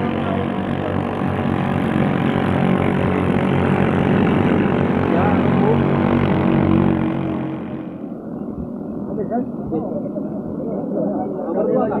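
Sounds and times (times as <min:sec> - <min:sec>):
boat engines droning: 0:00.0 - 0:12.0.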